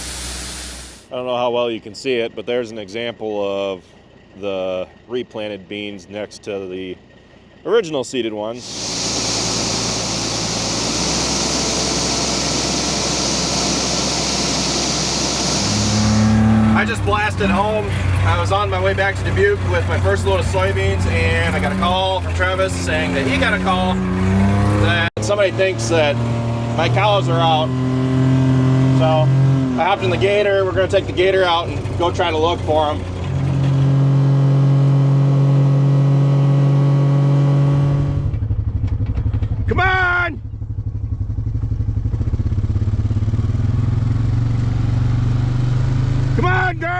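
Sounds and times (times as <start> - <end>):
combine harvester running: 8.6 - 25.1
utility vehicle engine humming: 8.6 - 29.6.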